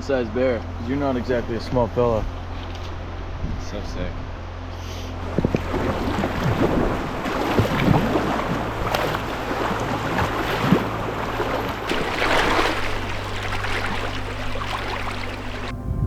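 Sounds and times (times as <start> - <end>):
river water rushing and splashing: 5.2 - 15.7.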